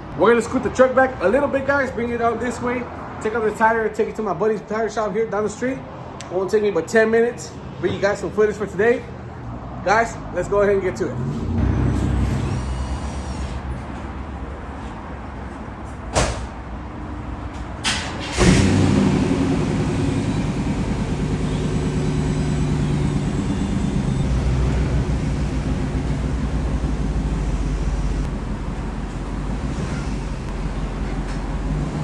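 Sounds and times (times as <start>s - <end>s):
car engine running: 18.2s - 32.0s.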